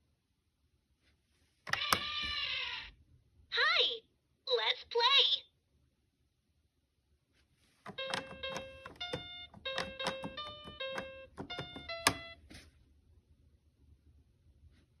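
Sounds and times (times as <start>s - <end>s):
toy playing beeping tune: 7.9s - 12.4s.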